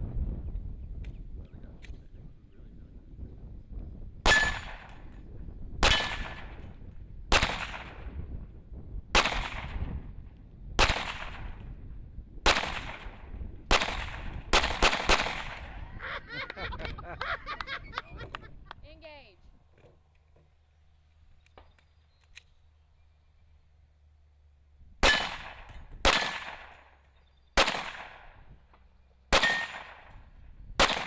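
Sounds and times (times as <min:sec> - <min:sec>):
rifle shots echoing: 0:04.3 - 0:05.2, 0:05.8 - 0:06.7, 0:07.3 - 0:08.1, 0:09.2 - 0:09.8, 0:10.8 - 0:11.6, 0:12.4 - 0:15.8, 0:25.0 - 0:27.0, 0:27.6 - 0:28.5, 0:29.3 - 0:30.2, 0:30.8 - 0:31.0.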